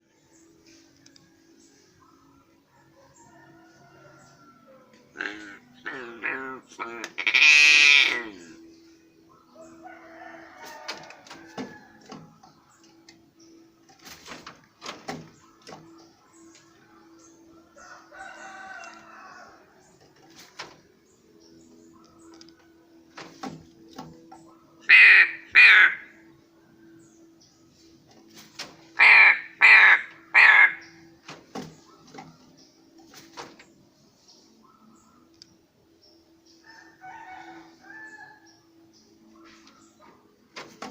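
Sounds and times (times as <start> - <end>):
crow cawing: 24.9 - 26.1, 29.0 - 30.9.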